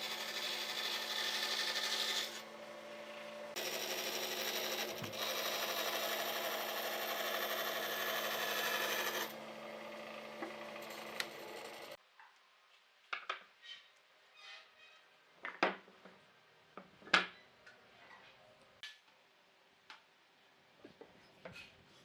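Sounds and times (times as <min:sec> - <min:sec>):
workshop machine hum: 0:00.0 - 0:12.0.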